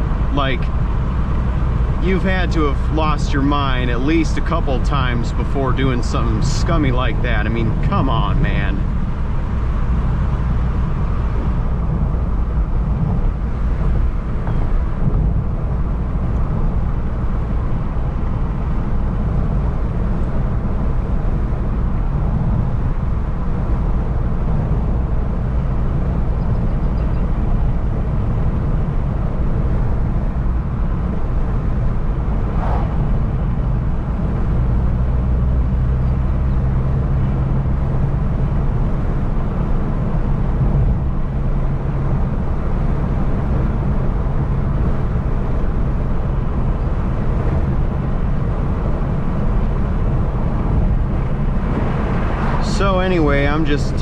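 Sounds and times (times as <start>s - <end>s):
car engine and road rumble: 0.0s - 54.0s
steady engine hum: 0.0s - 54.0s.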